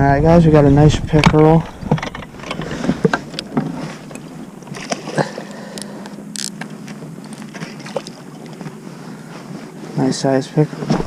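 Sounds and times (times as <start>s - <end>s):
knocks and clicks in a boat: 1.0s - 8.8s.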